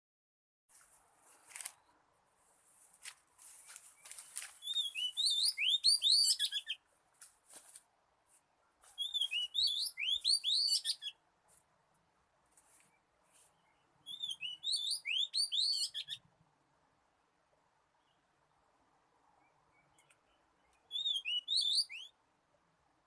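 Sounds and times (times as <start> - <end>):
bird whistled song: 4.6 - 6.8, 9.0 - 11.2, 13.6 - 16.3, 19.4 - 22.2.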